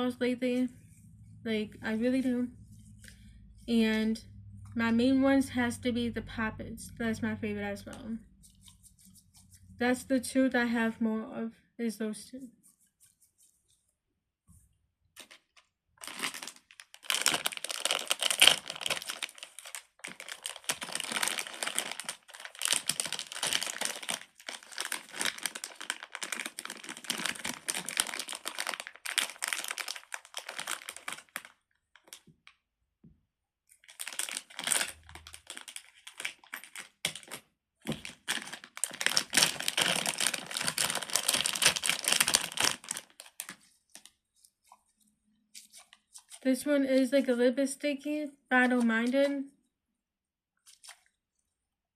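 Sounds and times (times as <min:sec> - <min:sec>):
fidget toy crinkling: 0:15.2 - 0:32.3, 0:33.8 - 0:44.8.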